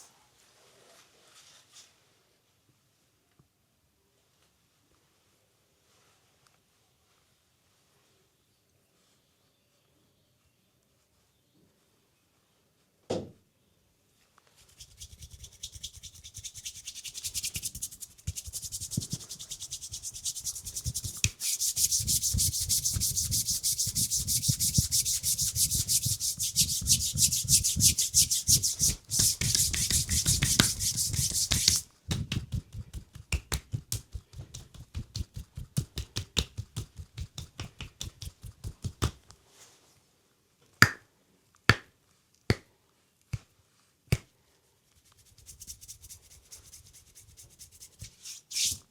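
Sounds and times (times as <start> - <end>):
hands rubbing skin: 14.6 - 39.4, 45.0 - 48.9
sharp snaps: 25.3 - 39.4.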